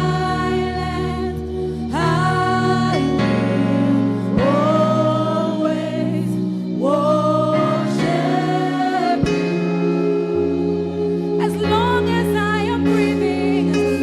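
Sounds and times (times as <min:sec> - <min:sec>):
bass line: 0:00.0 - 0:14.0
keyboard chords: 0:00.0 - 0:14.0.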